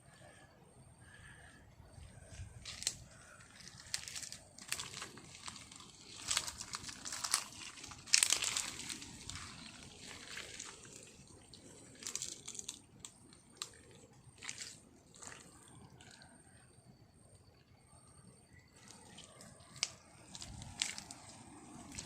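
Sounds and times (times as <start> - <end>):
crackling and rustling: 2.0 - 16.3, 18.8 - 22.0.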